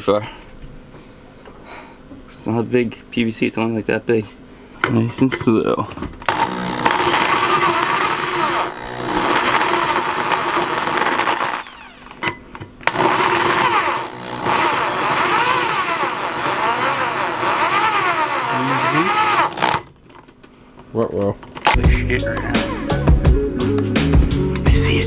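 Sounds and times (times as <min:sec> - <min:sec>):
power drill boring into metal: 0:06.2 - 0:19.9.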